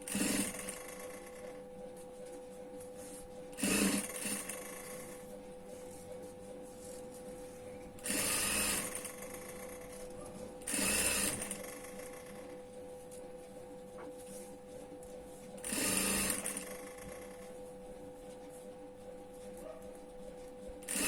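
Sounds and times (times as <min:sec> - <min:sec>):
sewing machine stitching: 0:00.0 - 0:01.4, 0:03.6 - 0:05.2, 0:08.0 - 0:10.0, 0:10.7 - 0:12.4, 0:15.6 - 0:17.4
sewing machine humming: 0:00.0 - 0:01.6, 0:03.6 - 0:05.3, 0:08.0 - 0:10.0, 0:10.7 - 0:12.6, 0:15.6 - 0:17.4.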